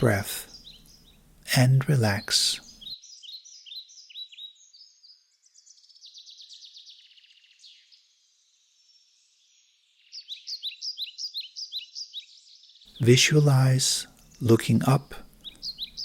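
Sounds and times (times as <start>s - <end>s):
bird chirping: 0.0s - 16.0s
bird trill: 0.0s - 16.0s.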